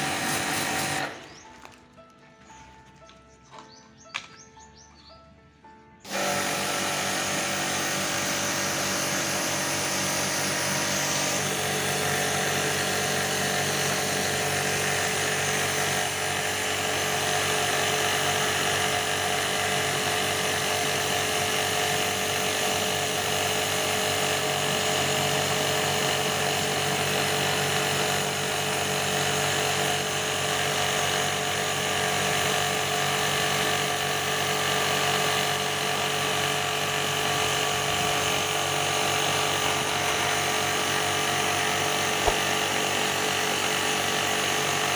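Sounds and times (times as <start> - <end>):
pressure washer motor running: 0.0 - 1.8, 6.0 - 44.9.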